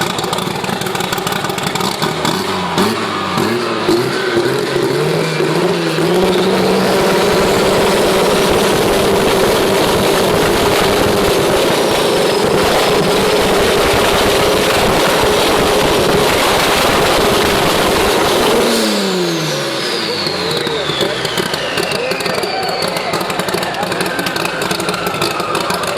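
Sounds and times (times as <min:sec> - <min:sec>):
car engine revving: 0:00.0 - 0:25.9.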